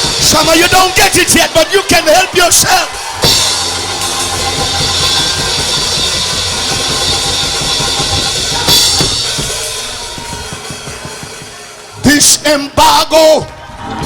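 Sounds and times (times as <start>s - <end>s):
drum kit playing: 0.0s - 12.4s
cymbal crash: 3.0s - 11.9s.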